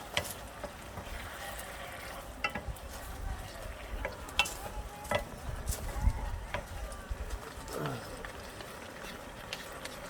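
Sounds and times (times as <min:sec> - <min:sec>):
food sizzling in a pan: 0:00.0 - 0:09.8
utensil clicking against pan: 0:02.4 - 0:02.7, 0:04.0 - 0:05.3.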